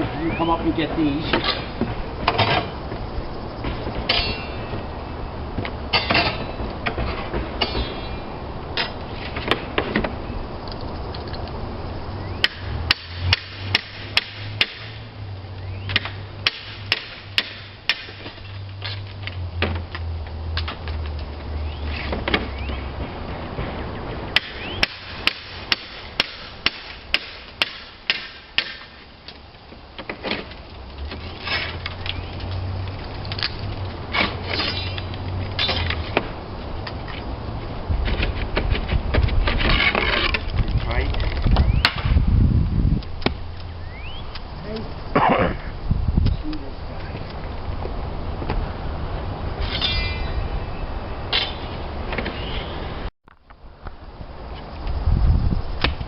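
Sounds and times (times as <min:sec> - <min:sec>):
hammer striking slate: 0:24.4 - 0:28.9.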